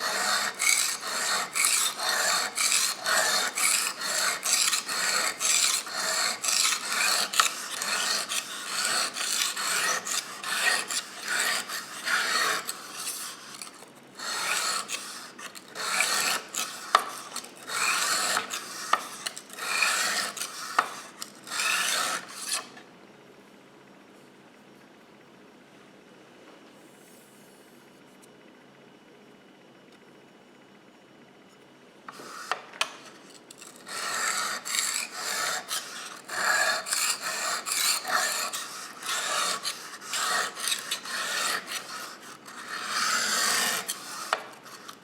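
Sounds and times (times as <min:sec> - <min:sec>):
knife scraping on sharpening stone: 0:00.0 - 0:22.7, 0:32.4 - 0:45.0.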